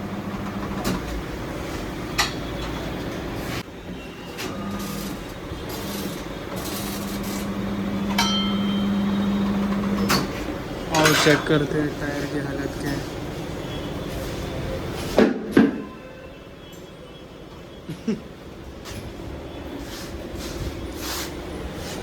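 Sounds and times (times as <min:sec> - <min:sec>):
workshop machinery hum: 0:00.0 - 0:22.0
sharp metallic knocks from tools: 0:08.1 - 0:08.8, 0:10.0 - 0:11.6.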